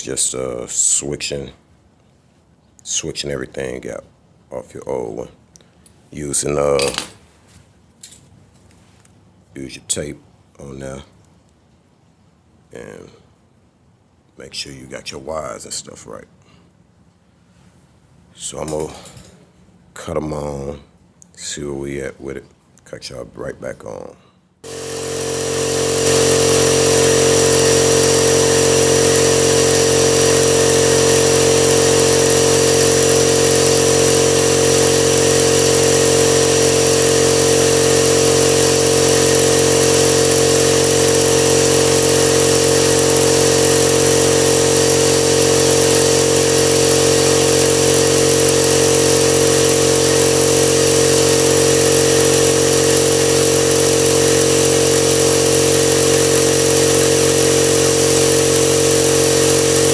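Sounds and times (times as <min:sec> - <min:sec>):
air compressor running: 0:00.0 - 0:01.3, 0:24.6 - 0:59.9.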